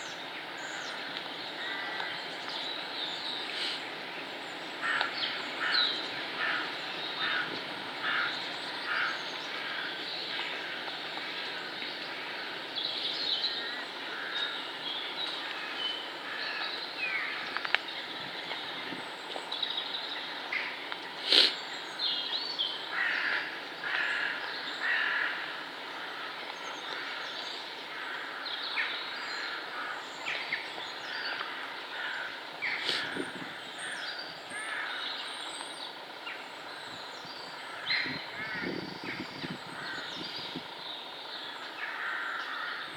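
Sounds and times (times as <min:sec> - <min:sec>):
steady background hiss: 0:00.0 - 0:42.9
birds chirping and trilling: 0:11.4 - 0:42.9.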